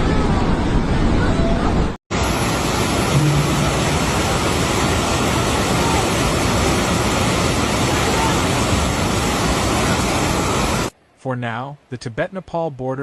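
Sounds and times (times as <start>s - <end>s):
rushing floodwater: 2.1s - 10.9s.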